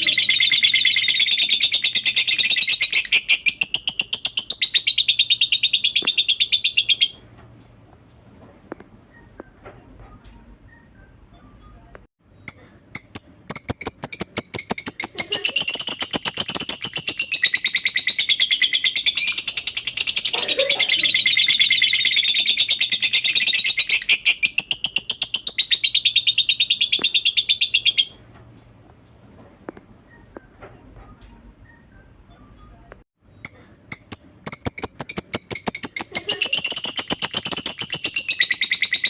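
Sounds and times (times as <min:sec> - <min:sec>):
lovebird chatter: 0:12.5 - 0:28.1, 0:33.4 - 0:39.0.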